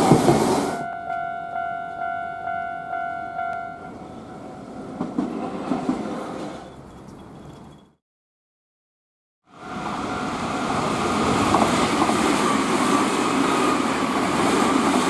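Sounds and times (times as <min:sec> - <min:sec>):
electric train running past: 0:00.0 - 0:07.8, 0:09.5 - 0:15.0
crossing warning bell clanging: 0:00.8 - 0:05.4, 0:09.5 - 0:12.2.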